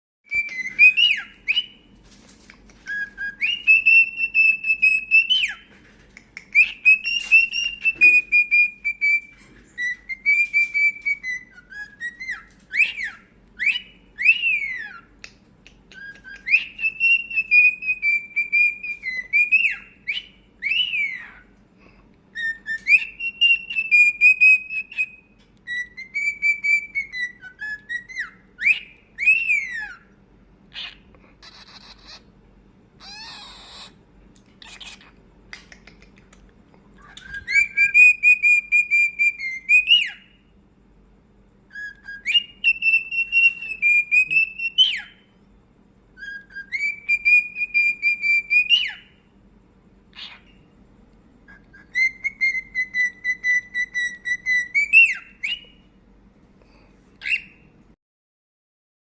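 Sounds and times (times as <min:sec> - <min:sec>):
cockatiel whistling a tune: 0:00.2 - 0:05.7, 0:06.4 - 0:21.5, 0:22.3 - 0:32.3, 0:33.0 - 0:34.0, 0:37.0 - 0:40.5, 0:41.7 - 0:45.3, 0:46.1 - 0:49.2, 0:50.1 - 0:50.6, 0:51.5 - 0:55.9, 0:57.2 - 0:57.7.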